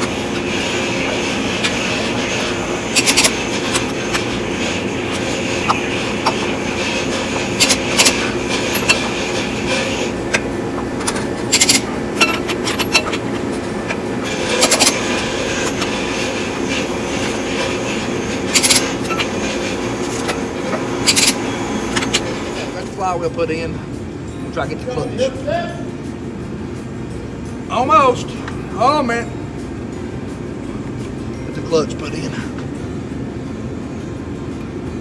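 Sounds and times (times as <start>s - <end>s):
torque wrench clicking: 0.0s - 22.7s
steady mechanical hum: 0.0s - 35.0s.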